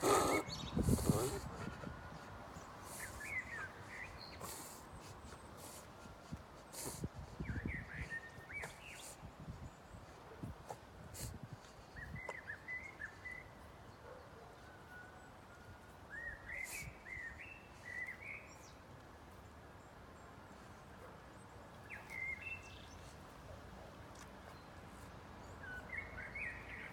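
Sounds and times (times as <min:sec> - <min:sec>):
outdoor background hiss: 0:00.0 - 0:26.9.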